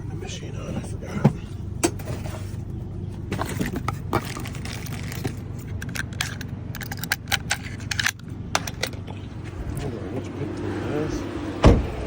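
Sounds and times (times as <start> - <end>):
vehicle engine running: 0.0 - 12.0
metallic clicks of lock tools: 5.7 - 9.0.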